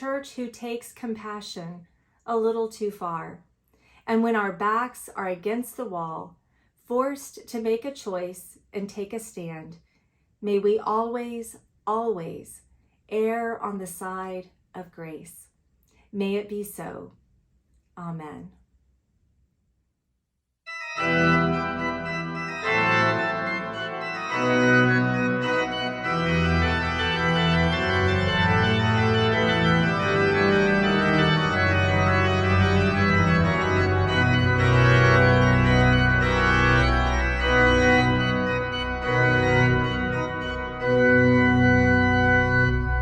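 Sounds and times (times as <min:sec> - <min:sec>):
organ music: 0:20.7 - 0:43.0.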